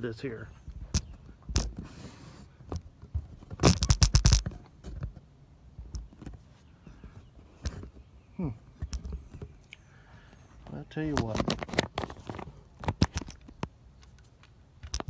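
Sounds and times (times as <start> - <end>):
phone handling knocks and scrapes: 11.1 - 13.6.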